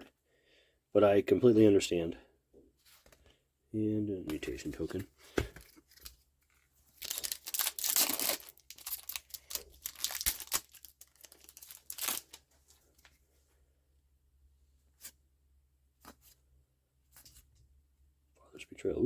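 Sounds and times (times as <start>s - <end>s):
wrapper tearing and crinkling: 7.0s - 12.4s.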